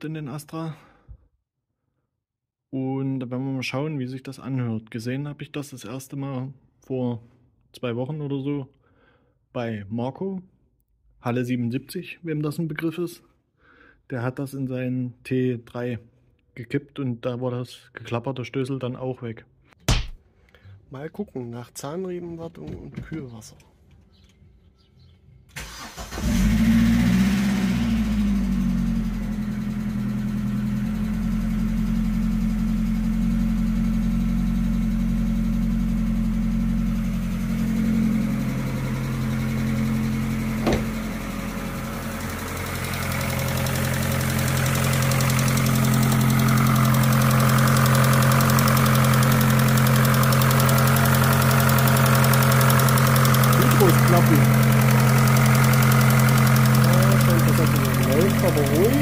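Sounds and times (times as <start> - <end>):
sharp click: 19.8 - 20.2
car engine starting and idling: 25.5 - 59.0.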